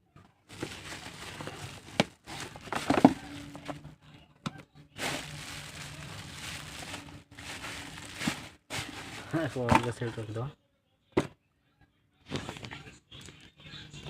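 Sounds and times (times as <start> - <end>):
plastic and paper crinkling: 0.4 - 3.9, 5.0 - 10.2.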